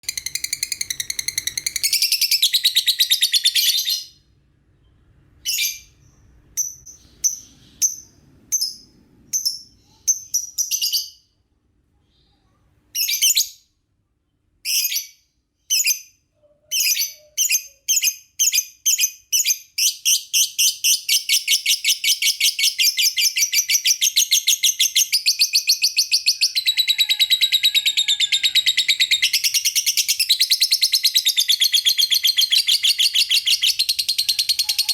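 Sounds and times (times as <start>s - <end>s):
lovebird chirping shrilly: 0.0s - 4.2s.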